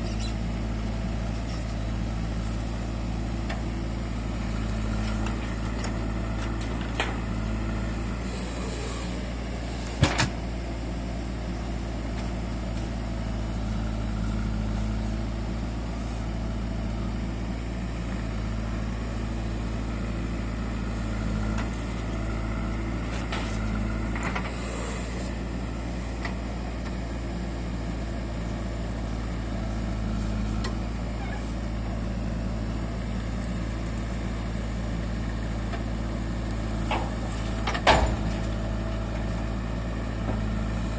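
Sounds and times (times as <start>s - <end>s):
diesel engine running: 0.0s - 40.9s
sharp engine knocks: 36.8s - 38.5s.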